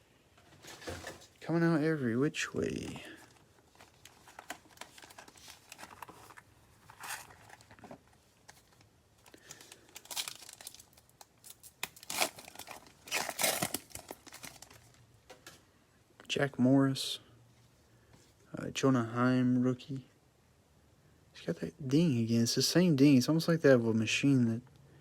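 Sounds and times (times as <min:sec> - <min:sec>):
wrappers tearing and crinkling: 0:03.2 - 0:15.0.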